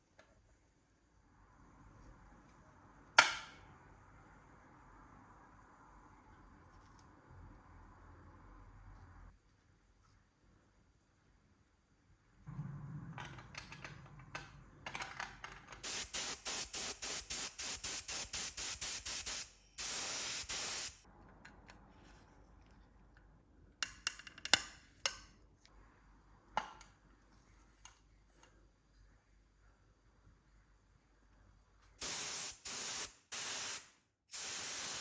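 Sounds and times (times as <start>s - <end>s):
aerosol spray can bursts: 15.8s - 21.0s, 32.0s - 35.0s.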